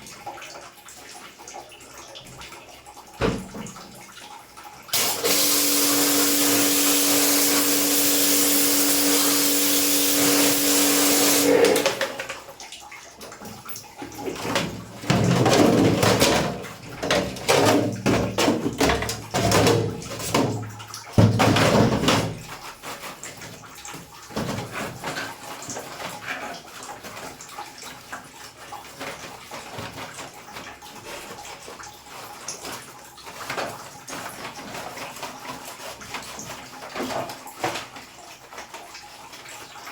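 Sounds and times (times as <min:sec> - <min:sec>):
water splashing and dripping: 0:00.0 - 0:39.9
pump motor hum: 0:04.9 - 0:22.6
water spray jetting: 0:05.0 - 0:12.0.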